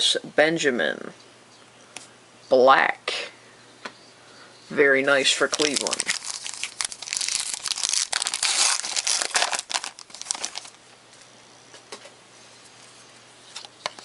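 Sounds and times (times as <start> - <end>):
foil wrapper tearing and crinkling: 5.4 - 10.8.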